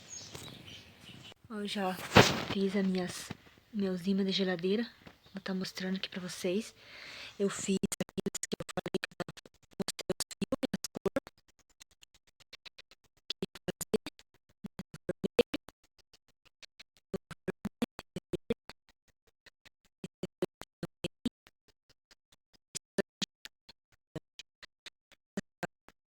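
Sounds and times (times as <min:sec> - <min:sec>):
electronic music with staccato clicks: 0:07.7 - 0:11.7.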